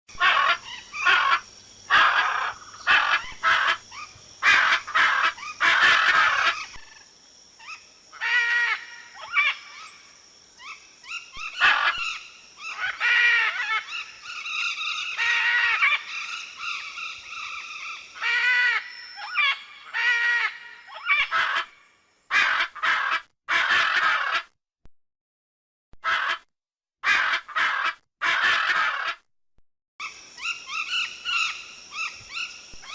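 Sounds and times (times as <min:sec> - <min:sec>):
macaws squawking: 0:00.1 - 0:06.9, 0:10.6 - 0:21.7, 0:22.3 - 0:24.5, 0:27.0 - 0:29.2, 0:30.0 - 0:32.9.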